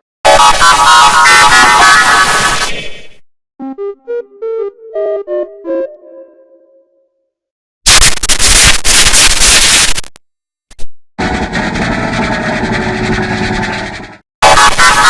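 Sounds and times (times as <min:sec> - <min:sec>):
distorted ringtone noise: 0:00.3 - 0:02.6, 0:11.2 - 0:15.0.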